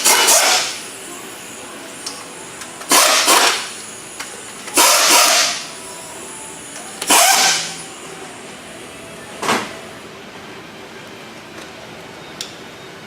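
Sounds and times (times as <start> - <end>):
pneumatic air tool hissing bursts: 0.0 - 1.0, 2.8 - 4.0, 4.6 - 5.7, 7.0 - 7.8.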